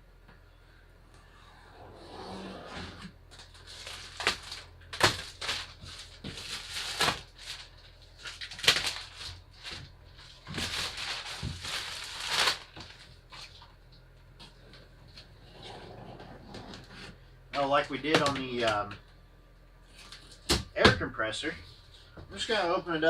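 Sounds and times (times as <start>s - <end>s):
cardboard ripping: 2.7s - 9.8s, 10.4s - 13.6s.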